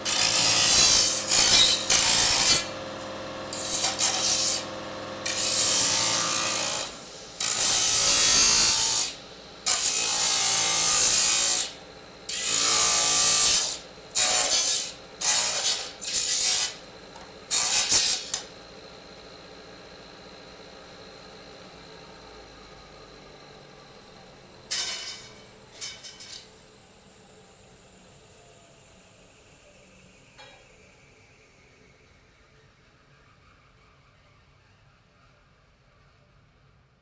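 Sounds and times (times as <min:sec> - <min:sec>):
disk saw cutting metal: 0:00.0 - 0:18.5, 0:24.7 - 0:26.5.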